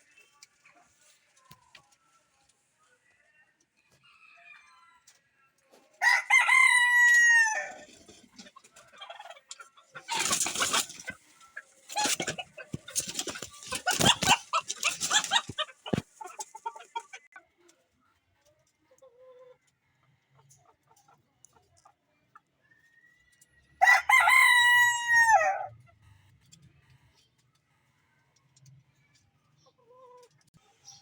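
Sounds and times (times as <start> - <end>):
chicken clucking: 0.0 - 26.6, 28.6 - 31.0
rooster crowing: 6.0 - 7.9, 23.8 - 25.7.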